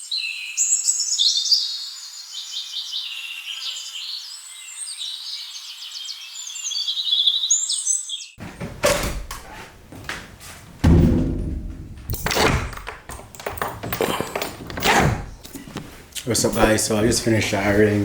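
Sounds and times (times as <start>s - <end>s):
birds chirping and trilling: 0.0s - 8.8s.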